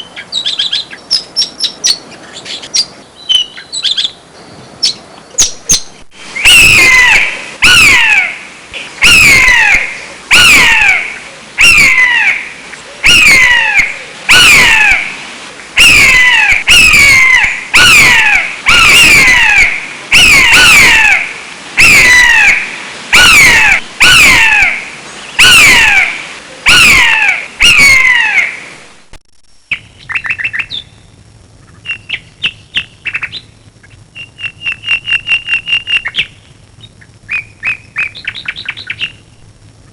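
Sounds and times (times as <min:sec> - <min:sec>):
bird chirping: 0:00.0 - 0:08.3, 0:29.7 - 0:39.5
bird squawking harshly: 0:06.4 - 0:08.4, 0:09.0 - 0:12.4, 0:13.0 - 0:15.1, 0:15.8 - 0:24.8, 0:25.4 - 0:28.5.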